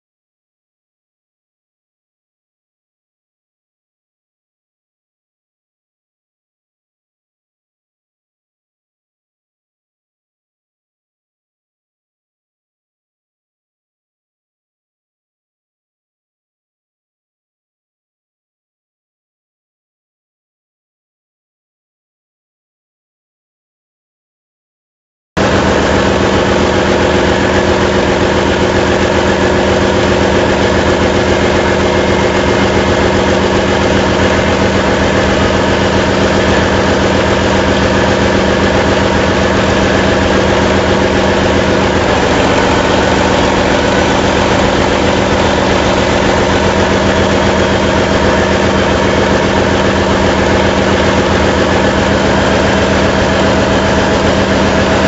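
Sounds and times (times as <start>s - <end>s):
diesel generator engine drone: 25.4s - 55.0s.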